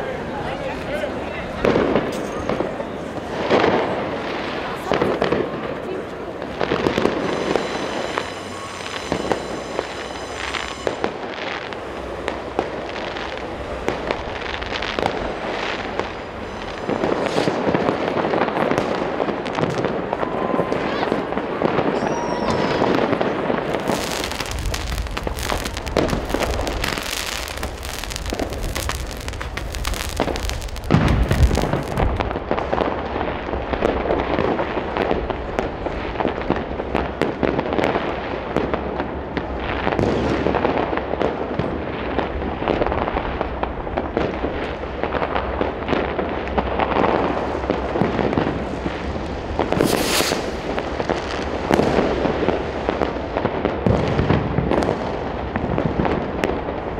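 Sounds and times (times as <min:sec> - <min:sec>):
fireworks crackling and popping: 0:00.0 - 0:56.9
deep firework boom: 0:01.6 - 0:34.0, 0:47.2 - 0:56.1
sharp firework bangs: 0:01.6 - 0:43.4, 0:44.0 - 0:56.5.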